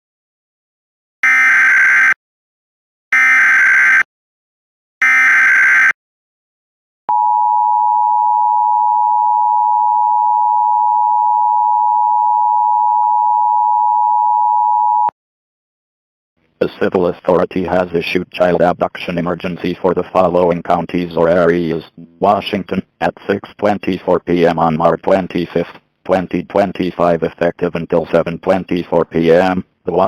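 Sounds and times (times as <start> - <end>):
two-tone attention signal: 7.1 - 15.1.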